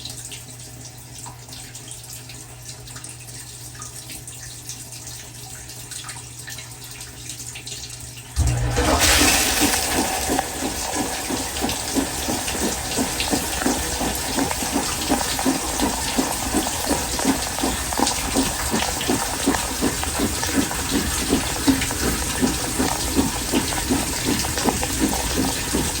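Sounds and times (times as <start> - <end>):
water trickling: 0.0 - 26.0
dishwasher hum: 8.4 - 26.0
wash motor running: 8.4 - 26.0
water spraying and splashing: 8.4 - 26.0.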